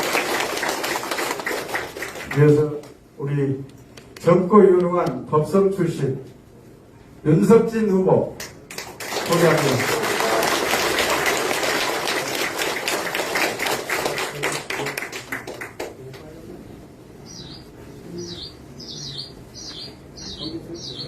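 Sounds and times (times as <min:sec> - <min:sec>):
audience clapping: 0:00.0 - 0:03.0, 0:08.4 - 0:16.2
small bird chirping: 0:17.2 - 0:21.0.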